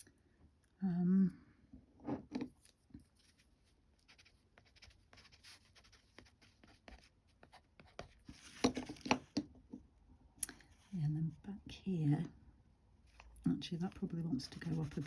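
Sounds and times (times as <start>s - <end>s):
crayon scratching on rough paper: 13.8s - 15.0s.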